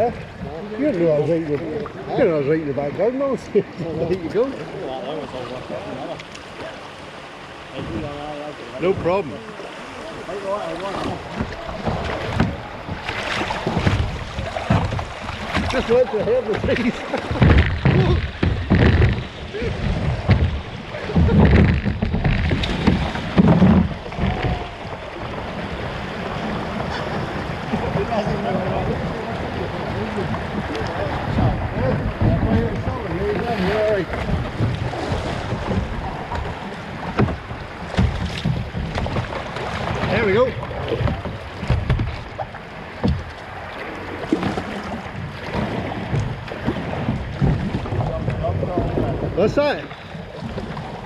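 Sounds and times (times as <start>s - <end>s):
river water rushing: 0.0s - 48.0s
paddle strokes: 0.0s - 51.0s
wind buffeting microphone: 7.7s - 51.0s
sharp splashes or knocks: 8.8s - 28.1s, 30.2s - 51.0s.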